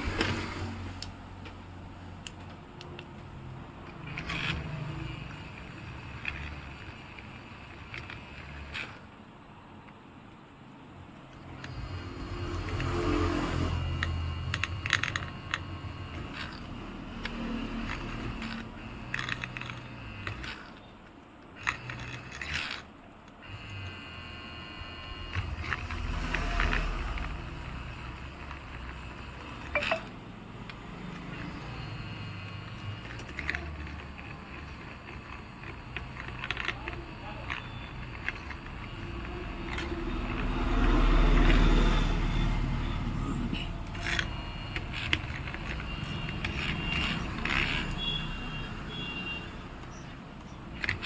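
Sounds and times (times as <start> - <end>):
sharp clicks: 11.2 - 42.9, 43.8 - 51.0
hand tools scraping a phone frame: 11.5 - 20.8, 21.5 - 29.8, 31.0 - 49.2.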